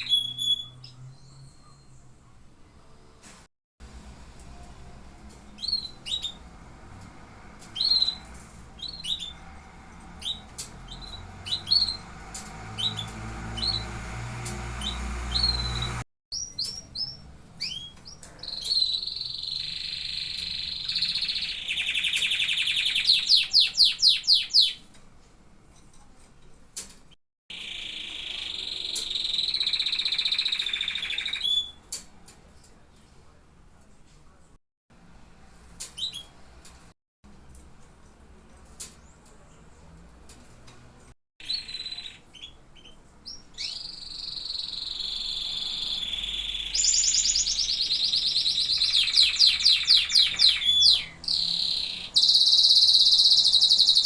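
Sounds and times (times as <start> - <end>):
canaries chirping and trilling: 0.0 - 2.2, 4.6 - 24.9, 41.4 - 54.0.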